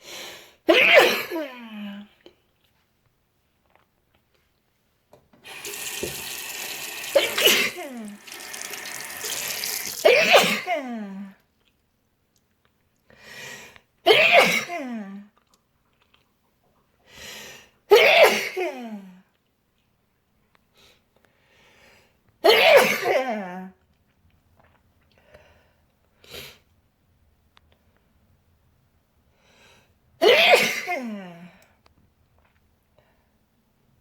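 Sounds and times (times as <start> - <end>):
person sneezing hard: 0.7 - 1.4, 7.0 - 8.1, 9.8 - 10.8, 14.1 - 14.8, 17.9 - 18.8, 22.5 - 23.2, 30.2 - 31.1.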